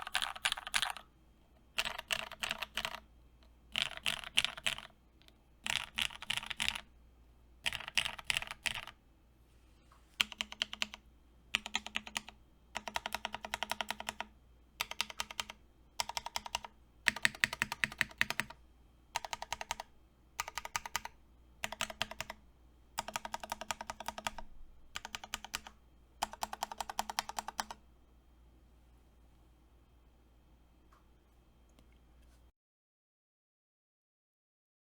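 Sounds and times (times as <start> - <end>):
mechanical keyboard typing: 0.0 - 1.1, 1.7 - 3.1, 3.7 - 5.0, 5.6 - 6.9, 7.6 - 9.0, 10.2 - 18.6, 19.2 - 22.4, 23.0 - 27.8.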